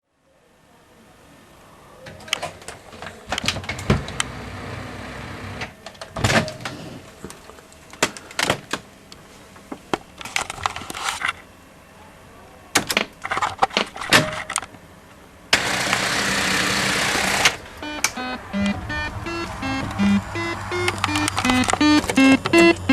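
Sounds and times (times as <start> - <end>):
gaming machine mechanical clicks: 17.4 - 22.9
short electronic beeps: 17.8 - 22.9.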